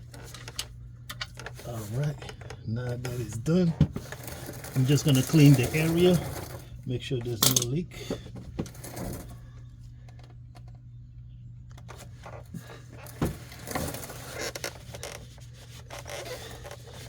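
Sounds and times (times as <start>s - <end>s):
steady low hum: 0.0s - 17.0s
hands and tools clinking: 7.3s - 7.8s.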